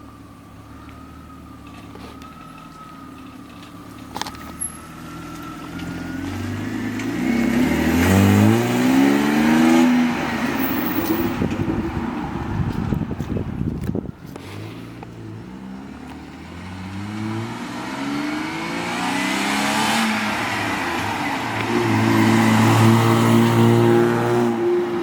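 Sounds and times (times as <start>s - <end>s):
exhaust crackle: 0.0s - 17.6s
car engine revving: 3.6s - 13.0s, 14.5s - 25.0s.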